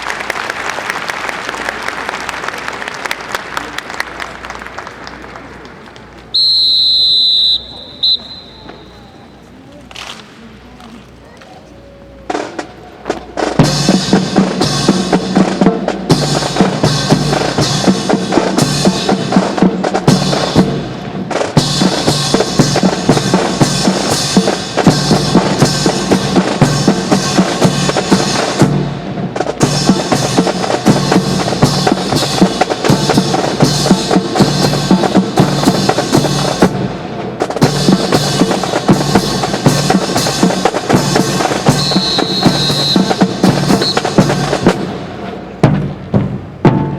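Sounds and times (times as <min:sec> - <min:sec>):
marching music with drums: 0:12.2 - 0:46.9.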